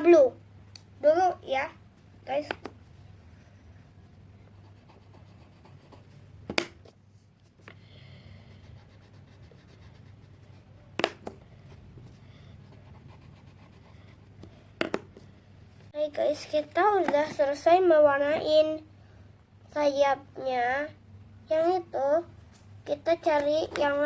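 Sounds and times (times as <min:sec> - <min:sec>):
pencil scratching on paper: 0:04.5 - 0:06.2, 0:08.5 - 0:10.7, 0:12.6 - 0:14.5.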